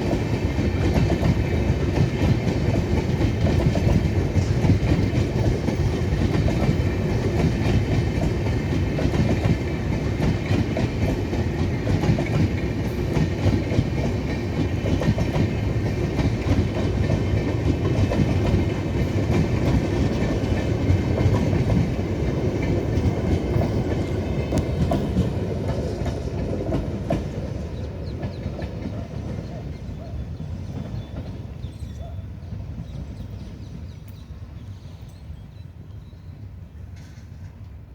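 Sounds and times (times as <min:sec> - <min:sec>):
train wheels clattering over rail joints: 0:00.0 - 0:31.7.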